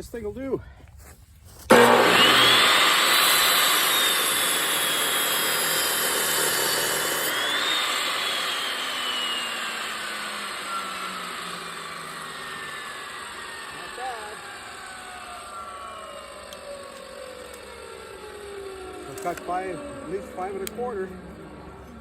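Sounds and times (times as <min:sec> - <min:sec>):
saw blade rasping through wood: 0:01.7 - 0:15.6
chop saw whine: 0:01.7 - 0:22.0.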